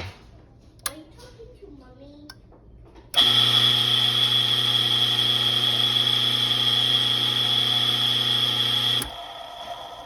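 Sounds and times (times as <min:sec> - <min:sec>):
pump motor humming and whining: 0:03.2 - 0:10.0.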